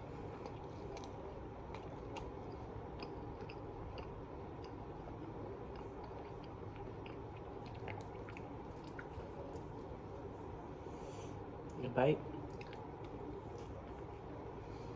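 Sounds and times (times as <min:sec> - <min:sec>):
person chewing food: 0:00.0 - 0:10.3, 0:12.4 - 0:14.4
steady low hum: 0:00.0 - 0:14.9.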